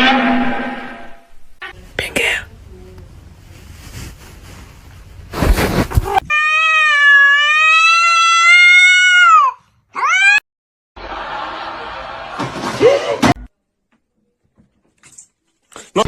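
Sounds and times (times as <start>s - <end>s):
brief loud noise: 0.0s - 1.3s
cat meowing: 6.3s - 10.4s.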